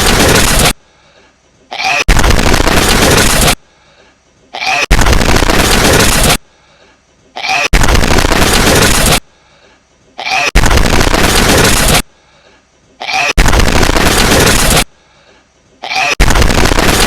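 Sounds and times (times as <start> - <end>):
squeaky snuffle: 1.7 - 2.1.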